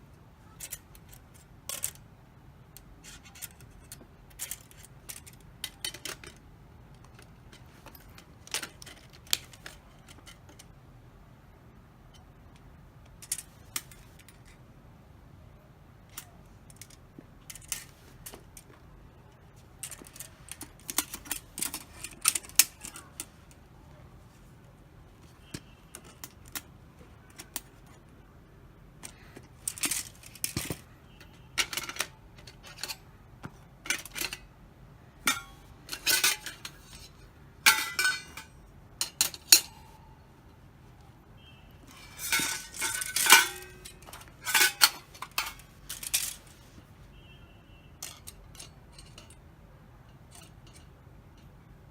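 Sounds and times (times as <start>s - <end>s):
metal parts clinking: 0.5s - 2.0s, 3.0s - 10.7s, 12.1s - 14.6s, 16.0s - 18.8s, 19.7s - 23.6s, 25.2s - 28.0s, 29.0s - 33.1s, 33.7s - 34.5s, 35.2s - 40.1s, 41.8s - 46.8s, 48.0s - 51.7s.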